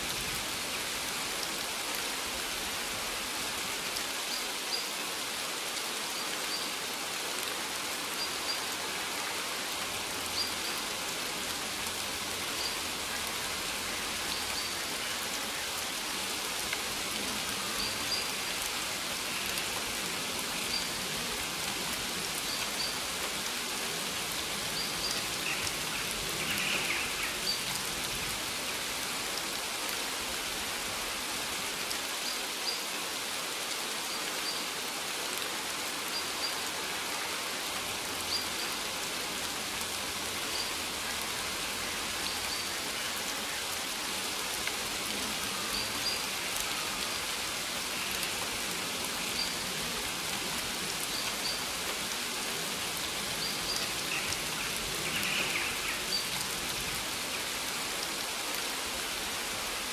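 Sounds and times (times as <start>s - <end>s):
rain falling on plants: 0.0s - 59.9s.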